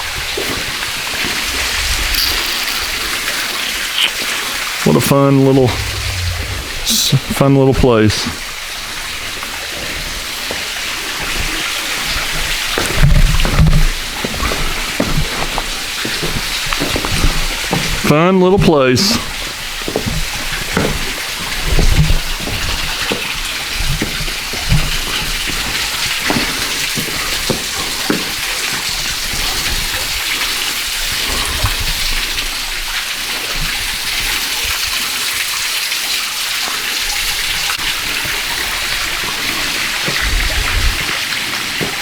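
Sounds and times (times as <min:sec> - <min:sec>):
low thumps: 0:05.4 - 0:07.6.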